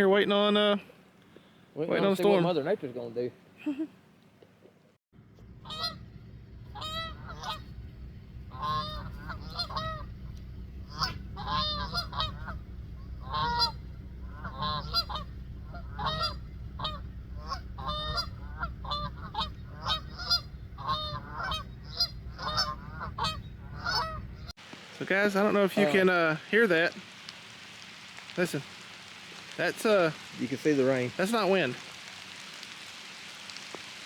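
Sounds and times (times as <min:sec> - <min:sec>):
steady low rumble: 0:05.2 - 0:24.6
geese honking: 0:05.6 - 0:07.8, 0:08.5 - 0:24.5.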